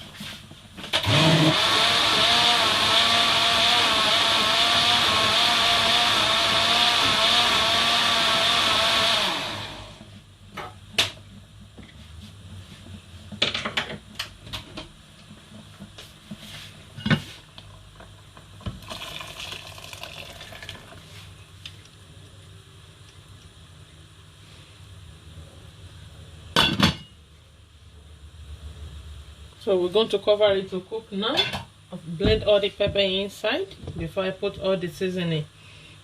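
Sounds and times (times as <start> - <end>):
electric blender running: 1.0 - 10.1, 18.8 - 21.0.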